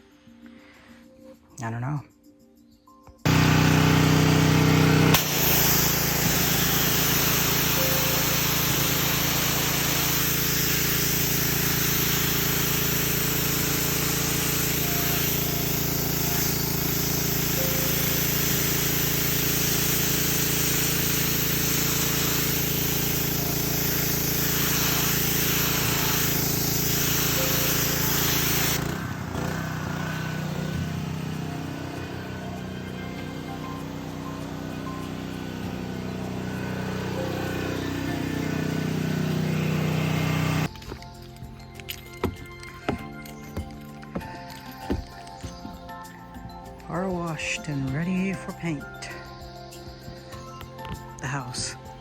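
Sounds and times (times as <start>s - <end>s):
loud hiss: 3.3s - 40.7s
small petrol engine running: 3.3s - 40.7s.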